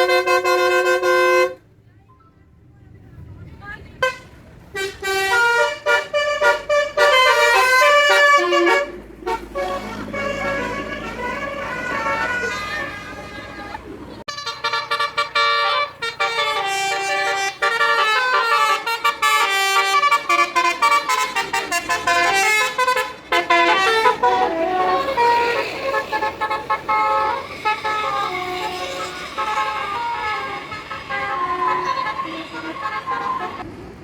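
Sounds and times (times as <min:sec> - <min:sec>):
multi-tone bus horn tune: 0:00.0 - 0:01.7, 0:04.0 - 0:33.7.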